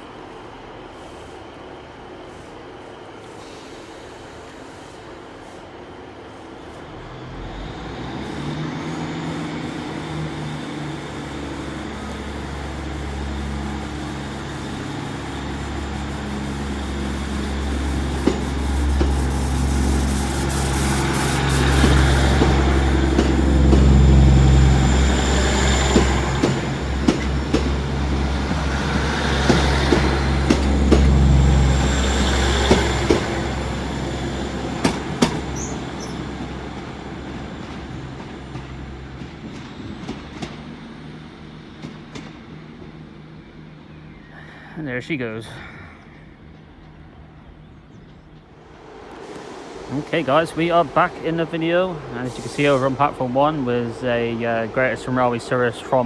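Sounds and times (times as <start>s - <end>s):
diesel train engines running: 0.0s - 56.0s
train wheels clicking over rail joints: 8.2s - 43.4s.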